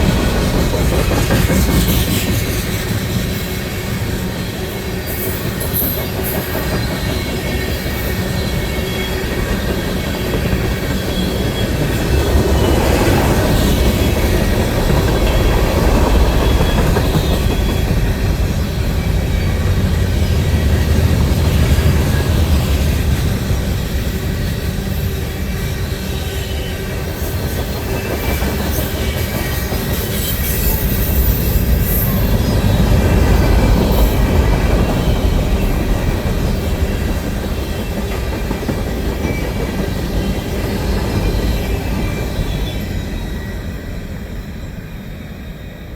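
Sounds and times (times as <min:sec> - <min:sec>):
freight train rumble and wheel clatter: 0:00.0 - 0:45.9
high-pitched wheel squeal: 0:28.0 - 0:33.0.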